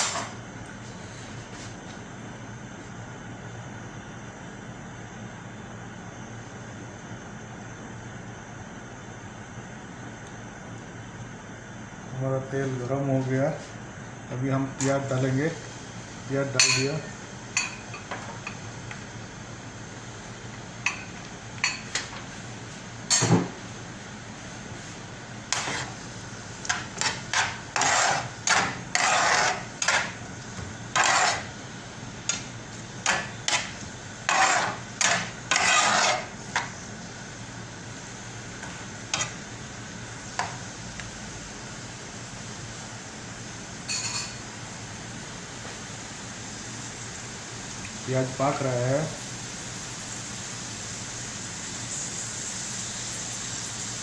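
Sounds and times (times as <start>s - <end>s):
oil sizzling: 15.7s - 54.0s
metal spatula scraping a pan: 25.5s - 26.0s, 26.7s - 30.2s, 30.9s - 31.5s, 33.0s - 36.7s.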